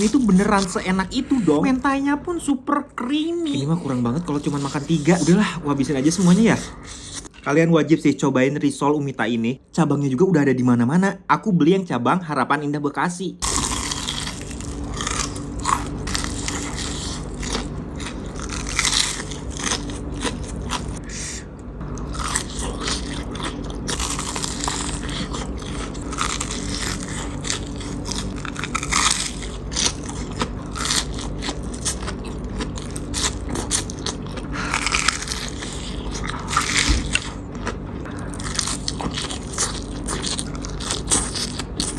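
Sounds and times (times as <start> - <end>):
crunchy bites and chewing: 0.0 - 2.1, 3.0 - 7.4, 13.4 - 41.9
steady low hum: 0.0 - 41.9.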